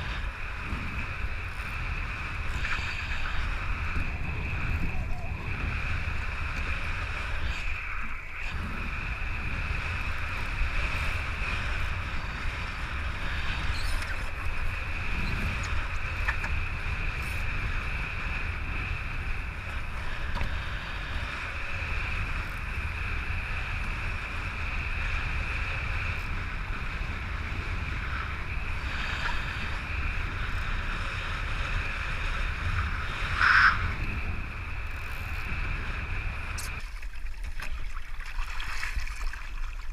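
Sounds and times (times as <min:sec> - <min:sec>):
wind buffeting microphone: 0:00.0 - 0:39.9
water rushing past a boat: 0:25.3 - 0:39.9.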